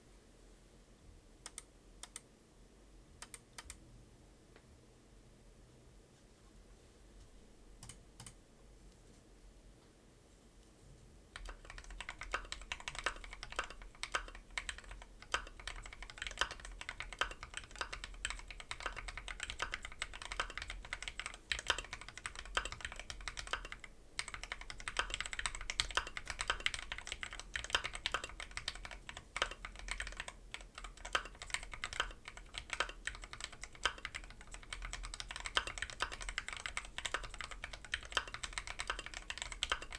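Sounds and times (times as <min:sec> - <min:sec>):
typing on mechanical keyboard: 0:11.4 - 0:39.9.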